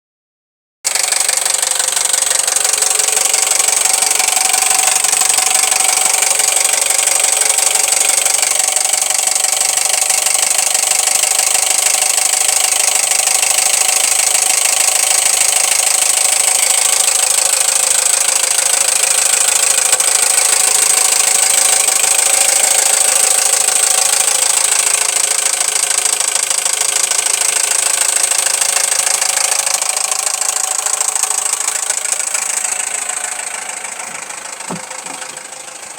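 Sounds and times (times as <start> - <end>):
car engine running: 0.9 - 35.9
rapid metallic knocking: 13.8 - 35.9.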